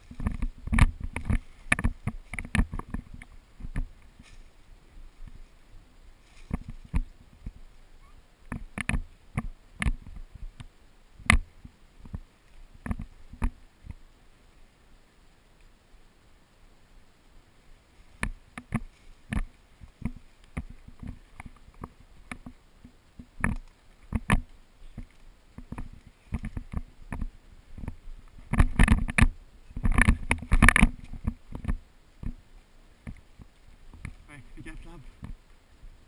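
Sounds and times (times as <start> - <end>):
footsteps: 0.0 - 7.8.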